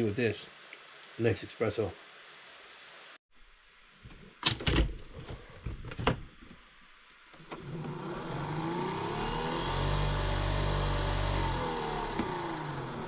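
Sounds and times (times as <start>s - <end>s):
small electric pump whine: 7.4s - 13.0s.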